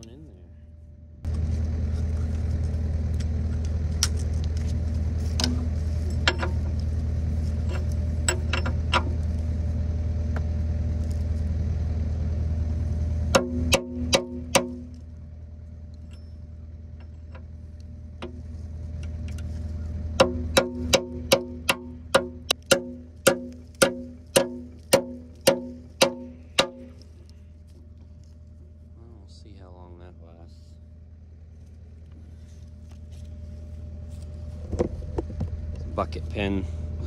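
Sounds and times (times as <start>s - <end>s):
low engine hum: 0.0s - 37.0s
hammer blows ringing on steel: 13.3s - 14.9s, 20.2s - 26.9s.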